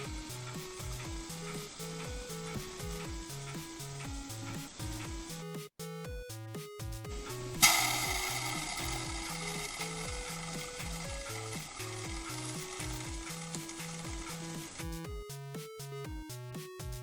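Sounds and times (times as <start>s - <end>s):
loud sizzling hiss: 0.0s - 5.0s, 7.5s - 15.0s
background music with bass line: 0.0s - 17.0s.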